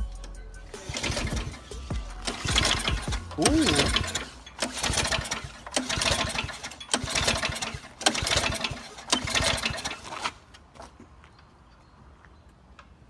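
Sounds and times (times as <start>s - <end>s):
recoil starter pulls: 0.2s - 10.6s.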